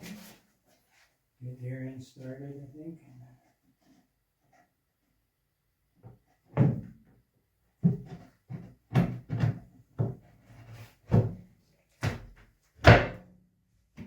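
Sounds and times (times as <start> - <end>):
wooden knocks and thuds: 6.0 - 7.1, 7.8 - 10.3, 11.0 - 13.2.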